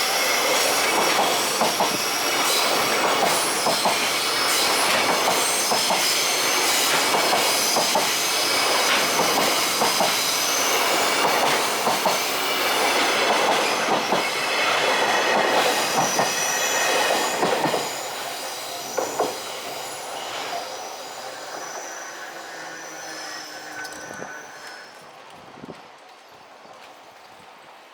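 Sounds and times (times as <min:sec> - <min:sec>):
train wheels squealing: 0:00.0 - 0:25.1
train wheels clacking on rail joints: 0:00.3 - 0:20.6.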